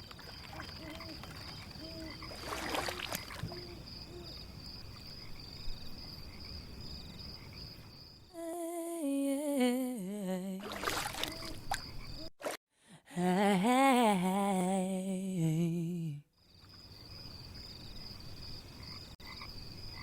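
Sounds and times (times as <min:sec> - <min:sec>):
steady outdoor hiss: 0:00.0 - 0:09.7, 0:13.4 - 0:20.0
woman humming a melody: 0:00.8 - 0:02.2, 0:03.5 - 0:04.4, 0:08.3 - 0:11.6, 0:13.0 - 0:16.2.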